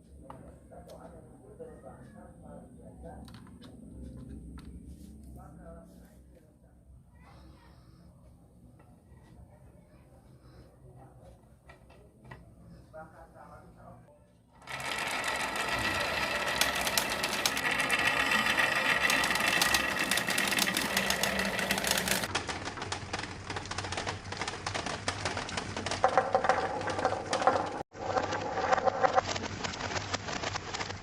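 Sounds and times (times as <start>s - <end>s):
marbles clattering along tracks: 14.6s - 30.6s.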